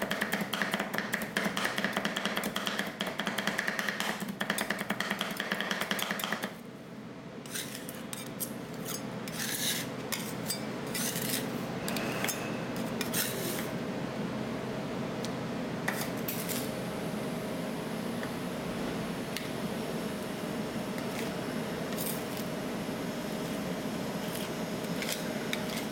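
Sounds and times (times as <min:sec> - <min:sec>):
spatulas chopping on steel plate: 0:00.0 - 0:06.6
spatulas scraping steel plate: 0:07.4 - 0:13.7.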